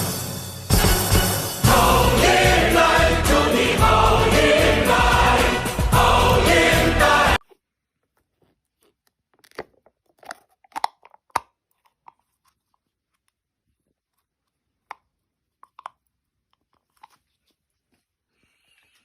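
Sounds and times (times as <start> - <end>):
crunchy chewing: 7.4 - 18.2.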